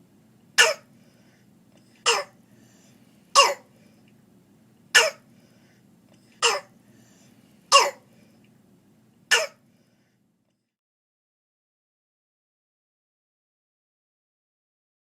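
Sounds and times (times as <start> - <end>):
harsh barking coughs: 0.6 - 0.9, 2.0 - 2.4, 3.4 - 3.7, 5.0 - 5.3, 6.4 - 6.8, 7.7 - 8.1, 9.3 - 9.6.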